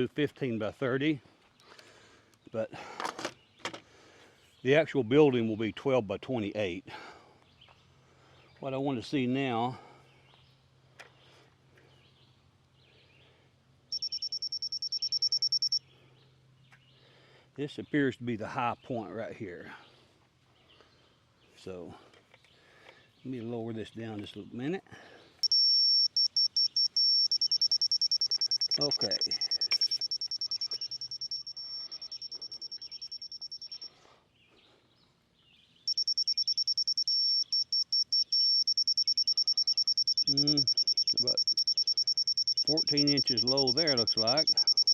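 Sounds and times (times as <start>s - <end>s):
rapid high beeps: 13.9s - 15.8s, 25.4s - 34.0s, 35.9s - 44.9s
songbird trilling: 13.9s - 15.9s, 25.4s - 34.0s, 35.5s - 44.9s
steady electronic tone: 25.4s - 33.9s, 35.9s - 44.9s.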